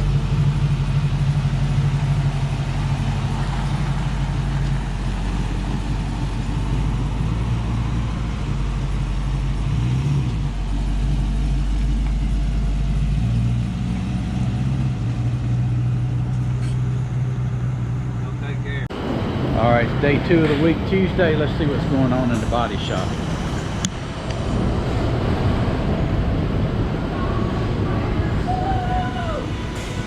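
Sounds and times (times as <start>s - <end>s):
motor humming: 28.7s - 30.0s.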